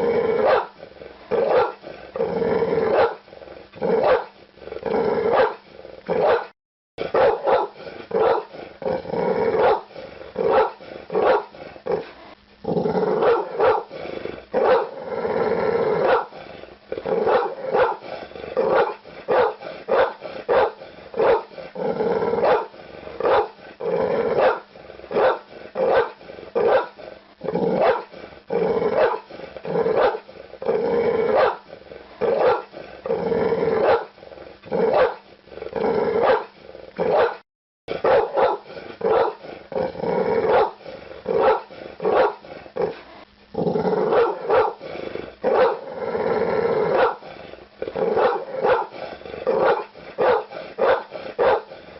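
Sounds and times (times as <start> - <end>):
dog barking: 0.4 - 0.8, 1.4 - 1.8, 2.9 - 3.2, 4.0 - 4.3, 5.3 - 5.6, 6.2 - 6.5, 7.1 - 8.5, 9.6 - 9.9, 10.5 - 11.5, 13.2 - 13.9, 14.6 - 15.0, 16.0 - 16.3, 17.2 - 18.0, 18.6 - 21.5, 22.4 - 23.6, 24.4 - 27.0, 27.8 - 28.1, 29.0 - 29.3, 30.0 - 30.2, 31.3 - 31.6, 32.3 - 32.7, 33.8 - 34.1, 34.9 - 35.2, 36.2 - 36.5, 37.1 - 37.4, 38.0 - 39.4, 40.5 - 40.8, 41.4 - 42.4, 44.1 - 44.8, 45.5 - 45.8, 46.9 - 47.2, 48.2 - 49.0, 49.6 - 51.7.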